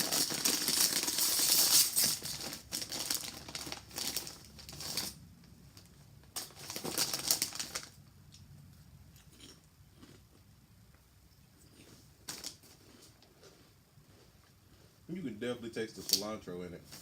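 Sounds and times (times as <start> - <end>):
chips rattling in bag: 0.0 - 5.2, 6.4 - 8.0
snack bag crinkling: 0.0 - 5.2, 5.8 - 8.0, 11.8 - 13.7, 15.9 - 16.3.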